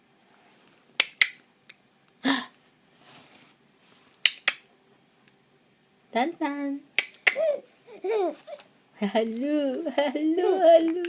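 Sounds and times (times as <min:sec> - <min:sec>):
person making sharp clicks: 0:01.0 - 0:01.8, 0:04.2 - 0:04.7, 0:07.0 - 0:07.4.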